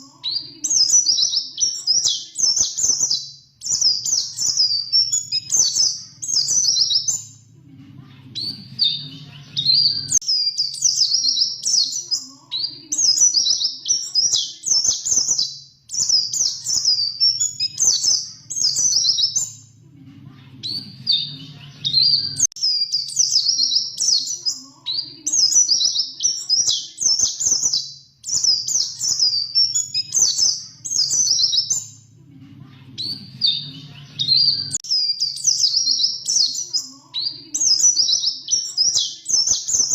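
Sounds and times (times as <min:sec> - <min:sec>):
bird twittering and trilling: 0:00.0 - 0:39.9.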